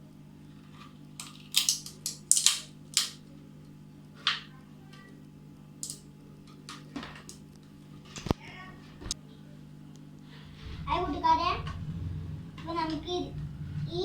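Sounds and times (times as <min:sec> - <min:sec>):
low steady hum: 0:09.0 - 0:14.0.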